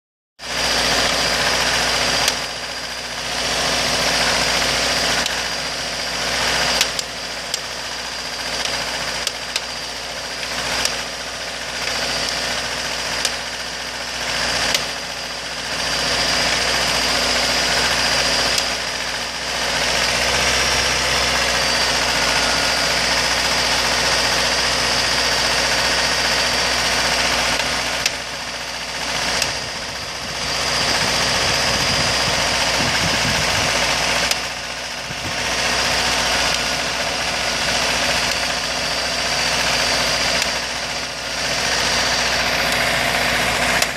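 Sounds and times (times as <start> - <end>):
car engine idling: 0.4 - 43.9
engine tapping: 0.6 - 43.9.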